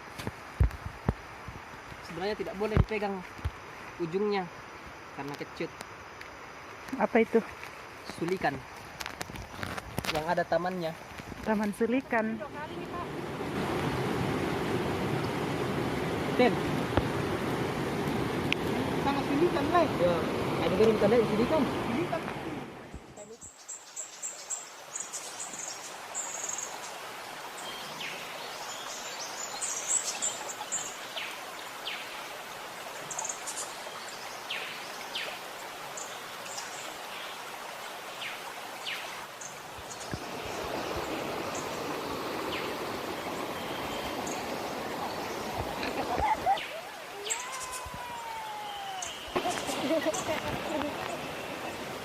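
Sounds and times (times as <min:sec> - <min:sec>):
water rushing: 0:00.0 - 0:52.0
high bird chirps: 0:46.5 - 0:50.4.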